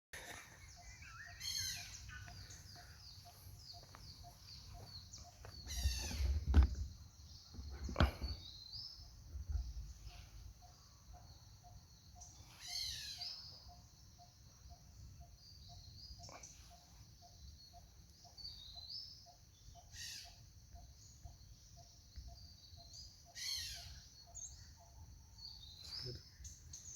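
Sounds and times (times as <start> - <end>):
birds chirping: 0.2 - 26.9
handling knocks: 5.8 - 7.0.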